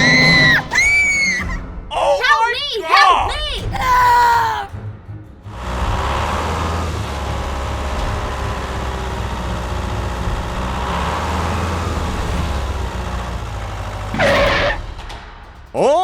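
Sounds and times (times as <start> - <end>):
heavy vehicle engine humming: 3.4 - 15.9.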